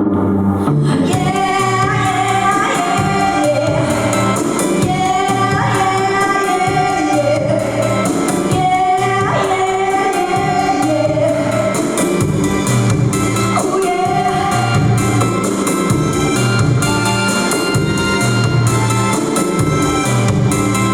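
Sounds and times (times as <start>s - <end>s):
woman singing: 0.8s - 12.0s, 13.6s - 15.4s
pop-rock band accompaniment: 1.1s - 20.9s
steady drum beat: 1.2s - 20.9s.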